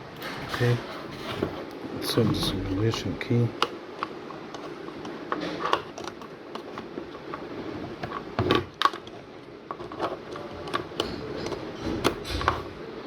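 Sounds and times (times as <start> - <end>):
small parts clicking and knocking: 8.0 - 12.7.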